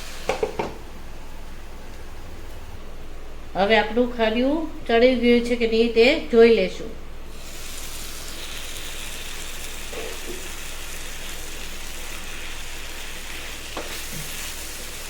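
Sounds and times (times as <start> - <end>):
vegetables sizzling in oil: 7.3 - 15.0.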